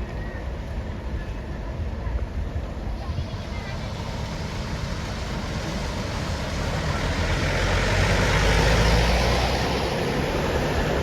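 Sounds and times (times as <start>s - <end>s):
large vehicle passing by: 3.0s - 11.0s.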